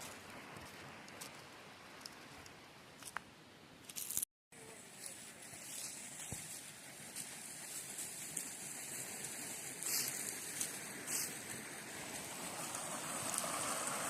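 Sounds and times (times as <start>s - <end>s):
running water rushing: 5.4s - 14.0s.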